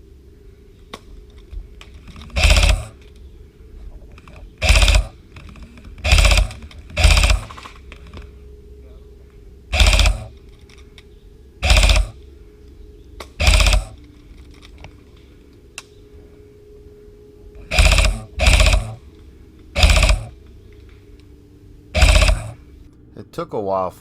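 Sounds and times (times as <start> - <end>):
airsoft gun firing bursts: 2.4 - 3.0, 4.6 - 5.2, 6.0 - 7.6, 9.7 - 10.3, 11.6 - 12.2, 13.4 - 14.0, 17.7 - 19.0, 19.8 - 20.4, 22.0 - 22.6.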